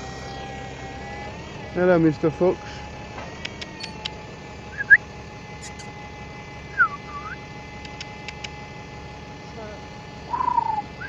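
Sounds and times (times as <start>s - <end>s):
person whistling: 6.8s - 7.4s.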